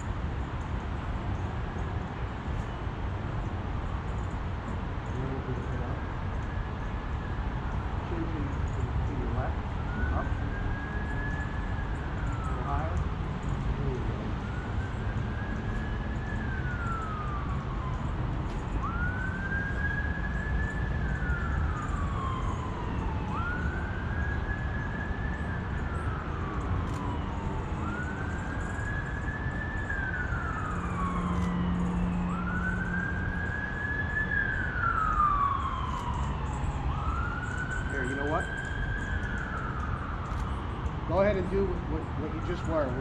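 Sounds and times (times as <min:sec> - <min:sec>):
emergency siren wailing: 0:00.0 - 0:43.0.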